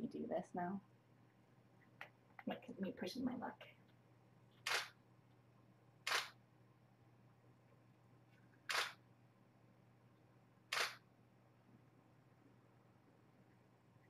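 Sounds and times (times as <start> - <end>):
camera shutter clicks: 4.6 - 5.0, 6.0 - 6.4, 8.7 - 9.0, 10.7 - 11.0.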